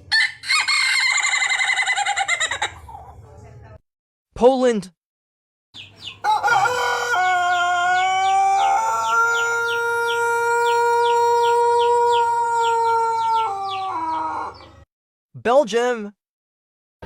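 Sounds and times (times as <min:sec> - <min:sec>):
rooster crowing: 0:00.1 - 0:02.7, 0:06.2 - 0:14.8.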